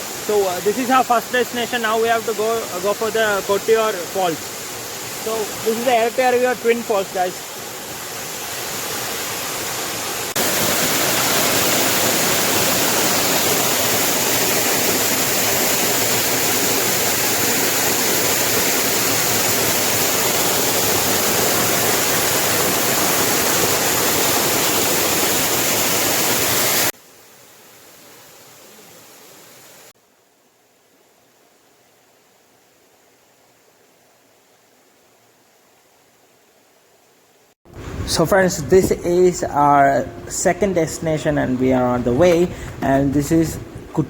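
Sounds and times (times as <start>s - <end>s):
waterfall rushing: 0.0s - 27.0s, 37.7s - 44.0s.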